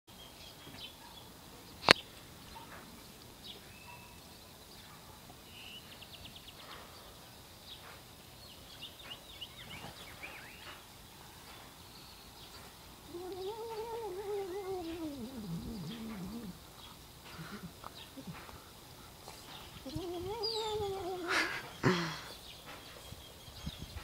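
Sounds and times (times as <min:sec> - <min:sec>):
cat yowling: 0:13.1 - 0:16.6, 0:19.8 - 0:21.6.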